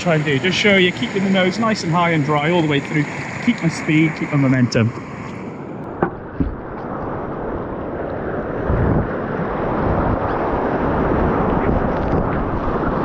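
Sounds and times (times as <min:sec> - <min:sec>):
rushing white water: 0:00.0 - 0:05.3.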